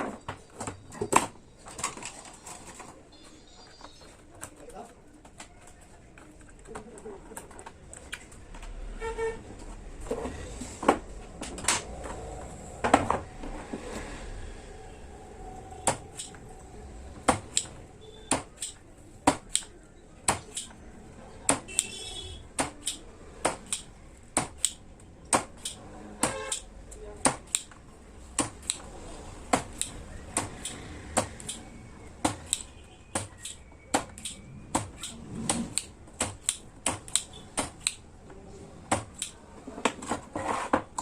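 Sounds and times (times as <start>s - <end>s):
small tools clicking on workbench: 32.3s - 38.0s.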